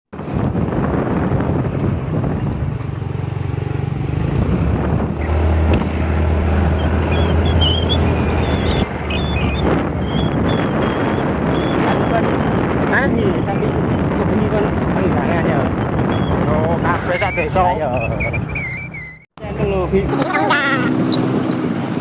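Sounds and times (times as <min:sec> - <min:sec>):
wind buffeting microphone: 0:00.1 - 0:20.2
vehicle engine humming: 0:00.2 - 0:22.0
thin high chirps: 0:06.7 - 0:11.8, 0:17.2 - 0:19.3.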